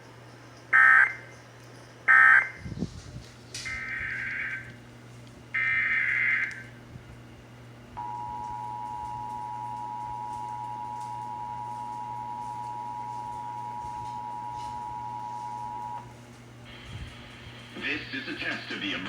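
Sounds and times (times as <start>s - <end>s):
screechy data bursts: 0.7s - 1.4s, 2.1s - 2.6s, 3.7s - 4.7s, 5.6s - 6.7s.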